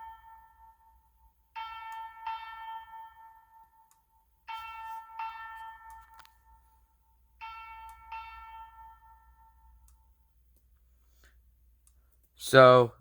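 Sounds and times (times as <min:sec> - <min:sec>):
fire alarm electronic chime: 0:00.0 - 0:03.9.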